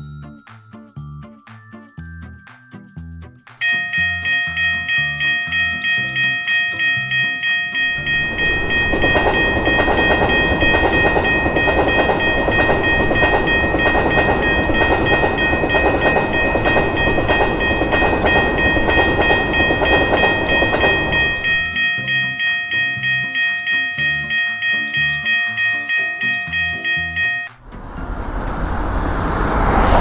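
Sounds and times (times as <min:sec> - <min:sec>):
crossing warning bell ringing: 0:03.6 - 0:30.0
train rumble with wheel clatter: 0:07.8 - 0:22.2, 0:27.6 - 0:30.0.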